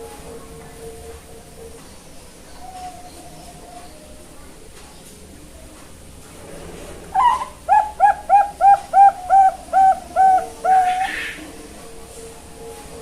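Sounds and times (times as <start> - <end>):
dove cooing: 7.1 - 11.7.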